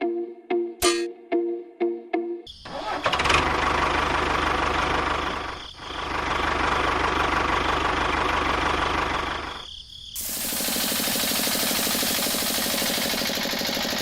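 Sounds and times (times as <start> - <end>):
small motor pulsing: 10.2 - 14.0.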